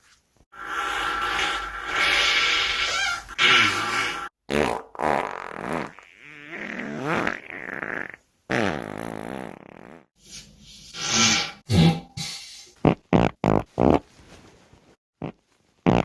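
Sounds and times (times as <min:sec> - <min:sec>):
person farting: 0:01.9 - 0:10.1, 0:12.8 - 0:14.1, 0:15.2 - 0:16.0.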